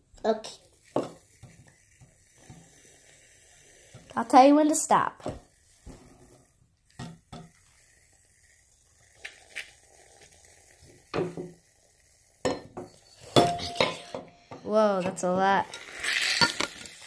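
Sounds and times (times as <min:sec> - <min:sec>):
aerosol can hissing: 0:00.9 - 0:06.5, 0:07.4 - 0:12.4.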